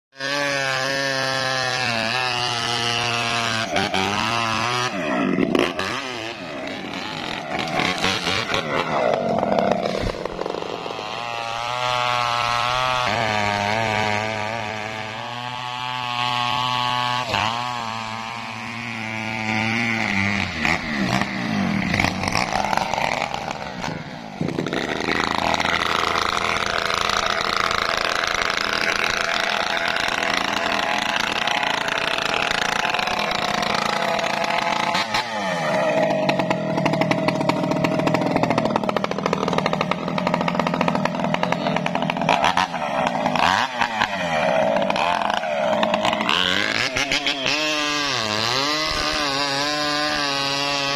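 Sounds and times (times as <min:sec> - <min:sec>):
chainsaw sawing through wood: 0:00.1 - 0:50.9.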